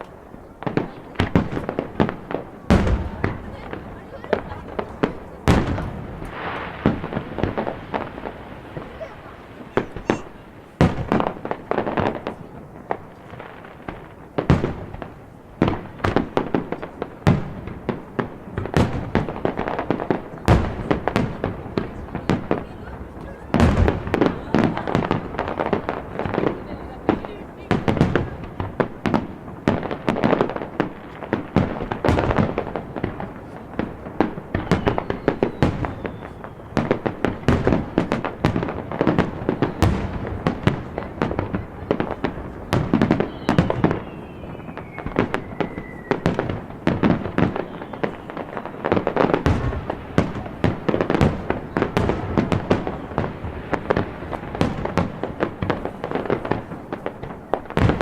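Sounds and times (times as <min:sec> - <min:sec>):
fireworks booming and crackling: 0:00.0 - 0:58.0
falling whistle: 0:34.6 - 0:36.8, 0:43.3 - 0:46.3.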